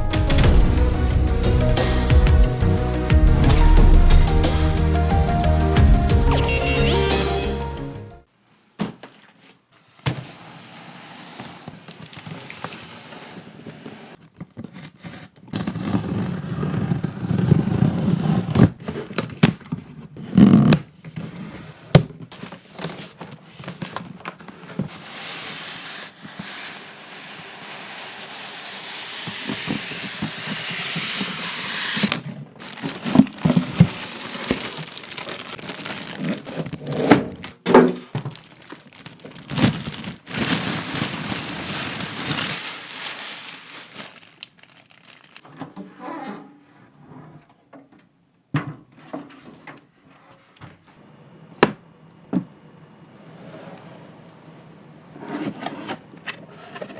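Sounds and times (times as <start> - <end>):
packaging crinkling and tearing: 32.0 - 45.5.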